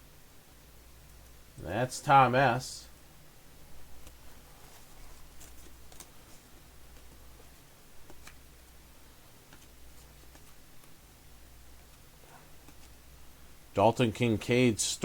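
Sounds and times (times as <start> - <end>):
low steady hum: 0.0 - 15.0
trading cards clicking: 5.3 - 6.2, 8.0 - 8.4.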